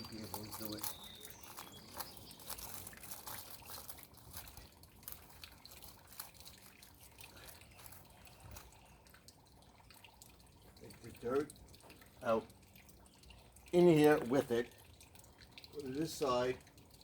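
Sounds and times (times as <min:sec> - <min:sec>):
hand tool scraping soil: 0:00.0 - 0:06.7.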